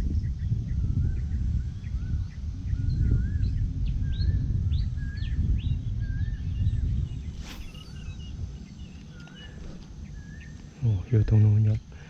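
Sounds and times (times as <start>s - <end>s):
birds chirping: 6.2s - 11.9s
bird whistling wavy phrase: 7.4s - 8.4s.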